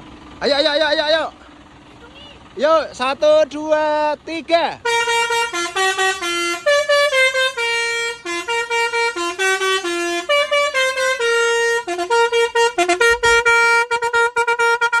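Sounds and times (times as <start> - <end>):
musical horn melody: 4.8 - 15.0.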